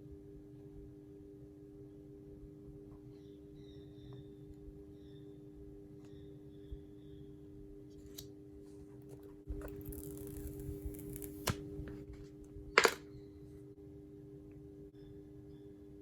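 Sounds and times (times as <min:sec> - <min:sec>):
packaging rustling: 0:09.6 - 0:11.7.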